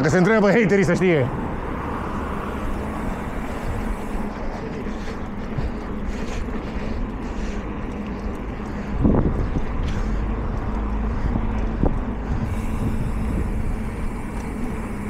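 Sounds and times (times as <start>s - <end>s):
traffic rumble: 0.0s - 15.0s
wind on microphone: 8.8s - 15.0s.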